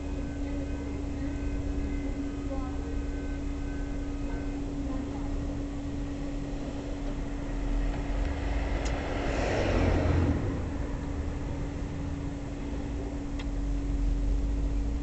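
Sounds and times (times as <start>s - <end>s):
steady low hum: 0.0s - 15.0s
vehicle passing: 7.5s - 12.9s.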